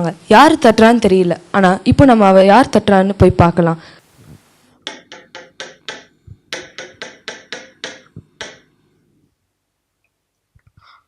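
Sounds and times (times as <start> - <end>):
rapid knocking on a door: 4.8 - 8.6.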